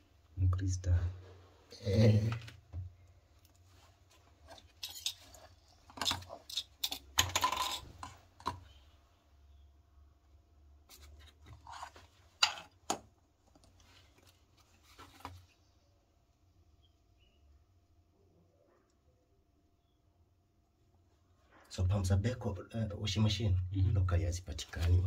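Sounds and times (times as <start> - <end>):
small hard parts clattering: 4.4 - 8.8, 11.6 - 13.0.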